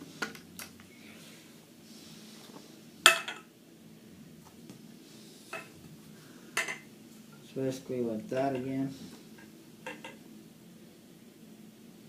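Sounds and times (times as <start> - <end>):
quiet handling: 5.5 - 10.2.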